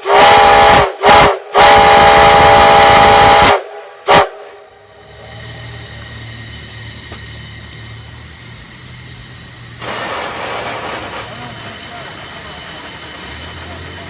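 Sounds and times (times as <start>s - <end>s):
engine humming: 4.4s - 14.0s
pressure venting hiss: 5.0s - 14.0s.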